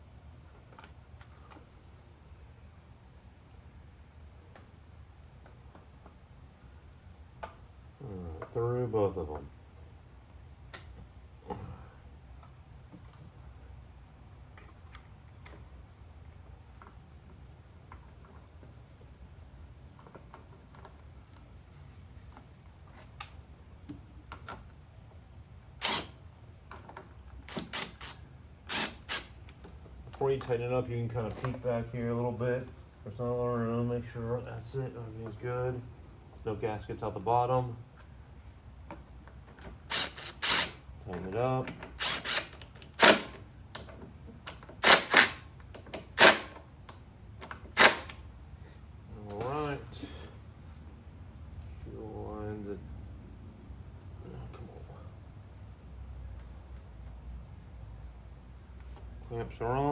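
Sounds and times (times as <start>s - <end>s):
ratchet wrench clicks: 27.5s - 29.3s, 39.9s - 40.8s, 42.0s - 43.4s.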